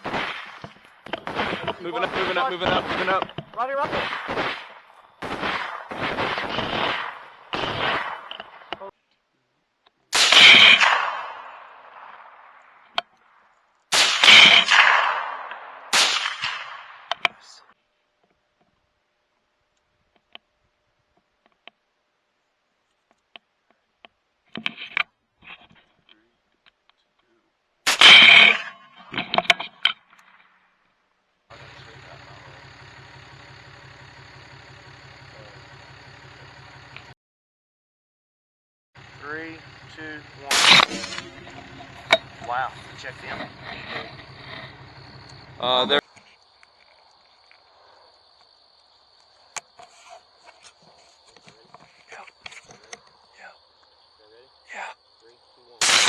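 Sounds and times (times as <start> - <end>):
rifle shots echoing: 0.0 - 8.8, 10.1 - 13.0, 13.9 - 17.6, 27.9 - 29.3, 39.2 - 45.6, 55.8 - 56.0
engine idling: 31.5 - 37.1, 39.0 - 53.4
sharp clicks: 39.4 - 53.2.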